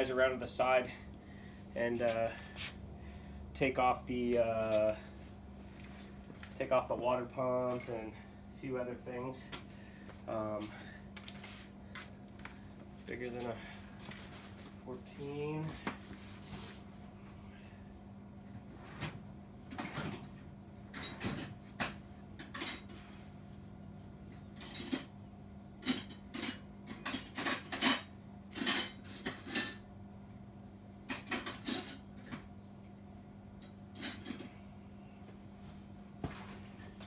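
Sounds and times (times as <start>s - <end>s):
metal tools clinking: 34.0s - 34.6s.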